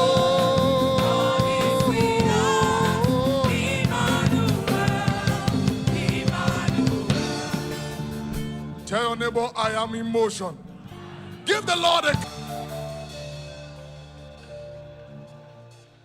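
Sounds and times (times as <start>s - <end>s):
drums and band playing: 0.0s - 9.0s, 12.0s - 14.8s.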